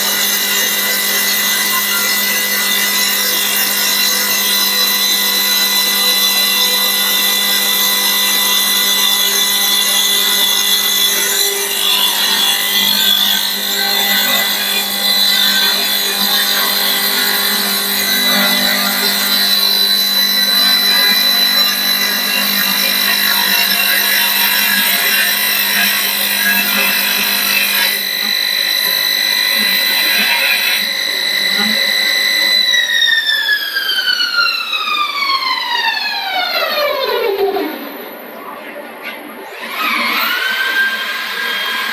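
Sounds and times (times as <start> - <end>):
lathe scraping wood: 0.0 - 33.0
motor whine: 0.0 - 38.7.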